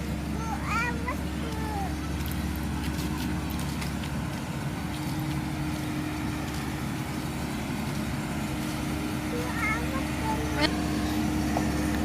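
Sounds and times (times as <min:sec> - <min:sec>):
combine harvester engine running: 0:00.0 - 0:12.0.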